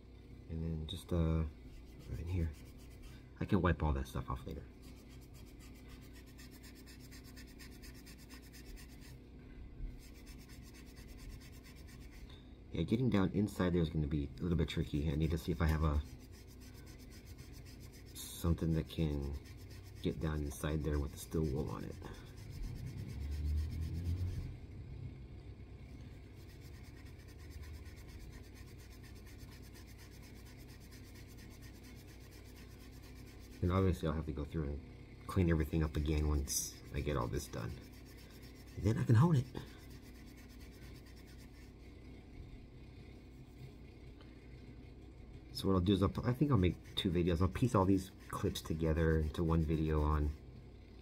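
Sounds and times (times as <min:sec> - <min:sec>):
steel wool rubbing on steel: 0:10.0 - 0:12.2, 0:15.3 - 0:24.5, 0:26.3 - 0:33.8, 0:35.8 - 0:41.9, 0:46.0 - 0:50.4.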